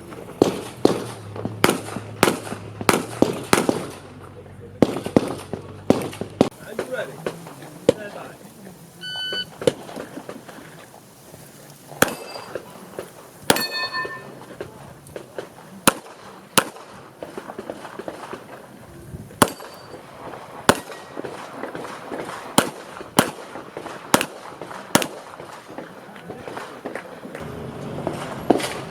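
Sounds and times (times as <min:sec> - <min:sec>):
handgun shots: 0:00.4 - 0:04.0, 0:12.0 - 0:12.6, 0:19.4 - 0:19.8, 0:20.7 - 0:23.5
metallic ring: 0:12.1 - 0:12.6, 0:13.5 - 0:14.4.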